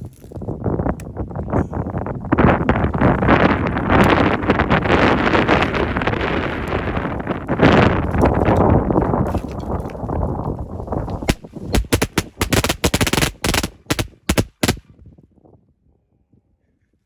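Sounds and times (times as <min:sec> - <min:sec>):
firework pops and cracks: 0:11.1 - 0:14.8.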